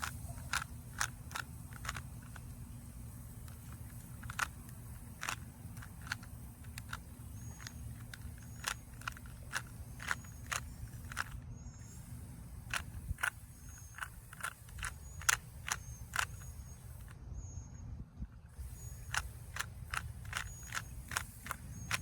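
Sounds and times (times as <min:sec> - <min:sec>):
plastic puzzle cube clicking: 0:00.0 - 0:02.6, 0:03.4 - 0:11.4, 0:12.7 - 0:17.1, 0:19.0 - 0:22.0
steady low hum: 0:00.0 - 0:22.0.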